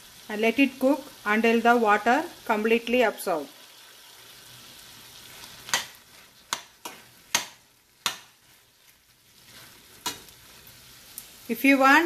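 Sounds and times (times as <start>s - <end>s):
faint sizzle: 0.0s - 12.0s
utensil scraping a pan: 5.2s - 10.8s.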